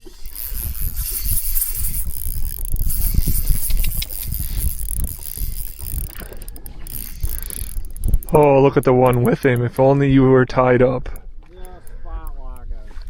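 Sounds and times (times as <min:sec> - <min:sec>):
fishing reel clicking and whirring: 0:00.0 - 0:09.8.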